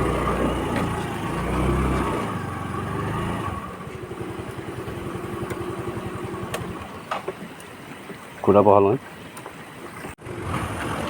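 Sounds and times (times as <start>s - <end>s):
scooter engine idling: 0.0s - 7.4s.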